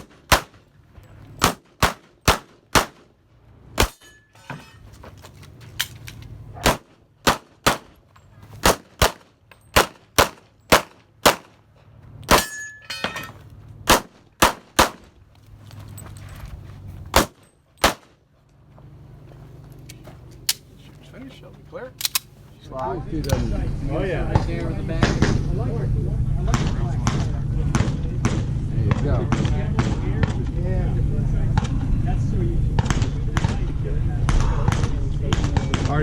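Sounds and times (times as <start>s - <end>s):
pistol shots: 0.0s - 0.6s, 1.4s - 3.1s, 3.8s - 4.0s, 6.6s - 8.0s, 8.6s - 11.6s, 12.3s - 12.6s, 13.9s - 15.1s, 17.1s - 18.1s
steel targets ringing: 3.8s - 4.9s, 12.3s - 13.4s.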